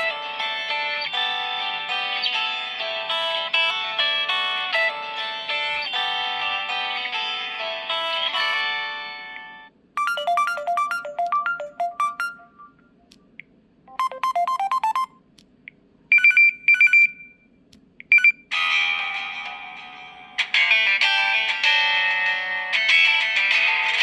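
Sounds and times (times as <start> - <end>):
phone ringtone tunes: 0.0 - 0.2, 10.0 - 12.8, 13.9 - 15.2
high beeps: 10.0 - 12.9, 13.9 - 15.2.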